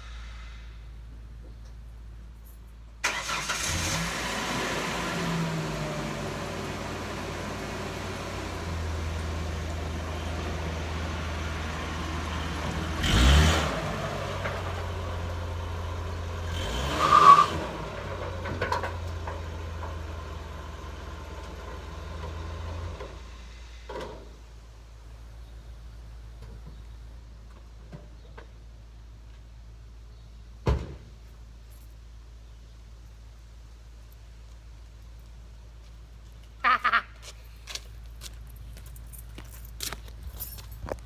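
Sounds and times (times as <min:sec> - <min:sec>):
pickup truck engine running: 0:03.0 - 0:16.9.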